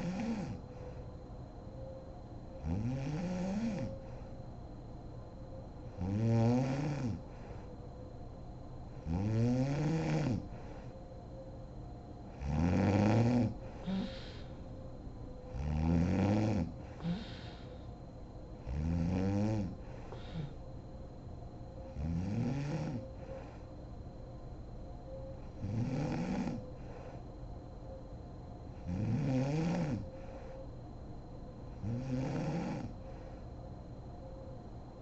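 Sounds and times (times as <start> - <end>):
woman snoring: 0.0 - 0.6, 2.6 - 4.0, 6.0 - 7.7, 9.0 - 10.9, 12.4 - 14.7, 15.5 - 17.9, 18.6 - 20.6, 21.9 - 23.6, 25.6 - 27.2, 28.8 - 30.5, 31.8 - 33.0
breathy exhales: 13.6 - 14.7, 16.8 - 17.9, 19.8 - 20.6.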